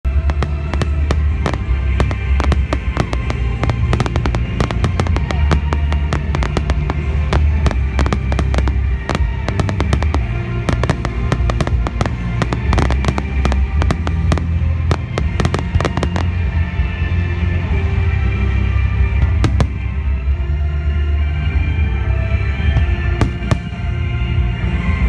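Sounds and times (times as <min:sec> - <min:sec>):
deep rumble of bursts: 0:00.0 - 0:25.0
music playing: 0:00.0 - 0:25.0
fireworks crackling pops: 0:00.1 - 0:16.6, 0:19.4 - 0:20.1, 0:23.2 - 0:24.2.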